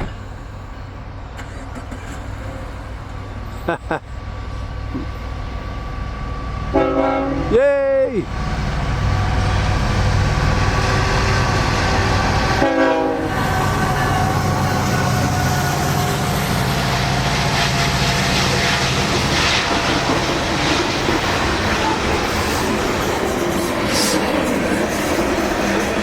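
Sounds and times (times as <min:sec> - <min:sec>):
diesel locomotives rumbling: 0:00.0 - 0:26.0
train horn chord: 0:06.7 - 0:07.5, 0:10.6 - 0:14.3
train wheels clattering: 0:13.6 - 0:26.0.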